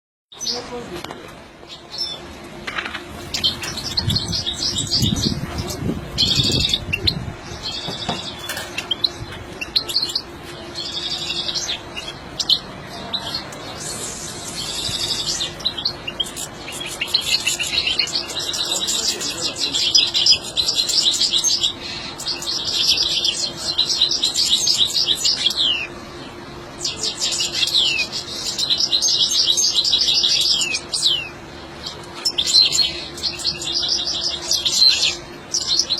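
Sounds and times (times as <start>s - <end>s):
goldfinch twittering song: 3.2s - 12.6s.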